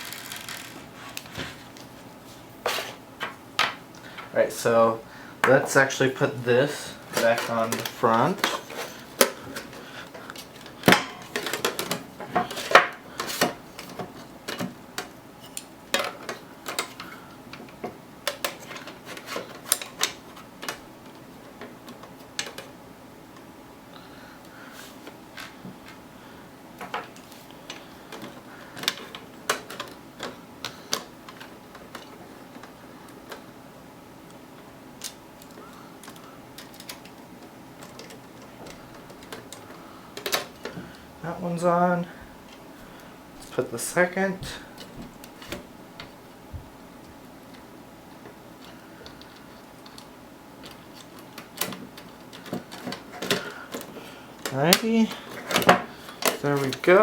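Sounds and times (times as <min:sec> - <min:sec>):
computer case parts clattering: 0:05.4 - 0:22.8, 0:35.0 - 0:40.9, 0:48.2 - 0:57.0.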